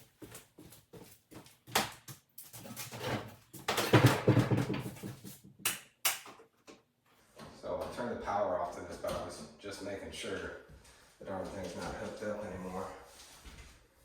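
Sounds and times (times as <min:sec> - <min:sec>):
sharp knocks and clatter: 0:01.7 - 0:06.4.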